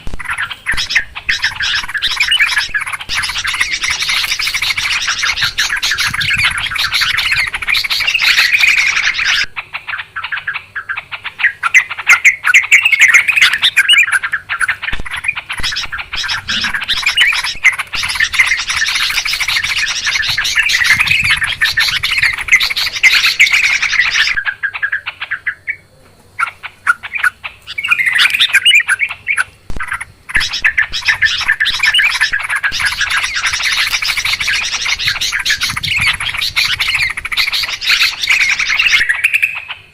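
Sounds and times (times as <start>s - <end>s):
birds chattering: 0.0s - 39.9s.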